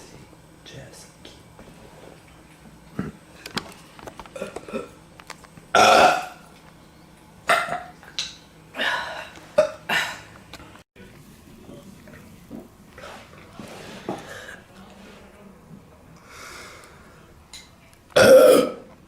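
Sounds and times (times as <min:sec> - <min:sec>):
woman burping: 0:04.4 - 0:04.9, 0:05.7 - 0:06.4, 0:18.2 - 0:18.9.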